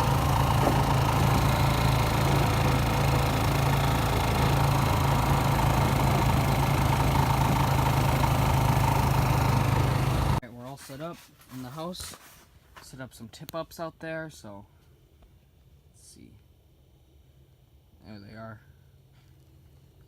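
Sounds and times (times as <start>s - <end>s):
engine humming steadily: 0.0s - 10.4s.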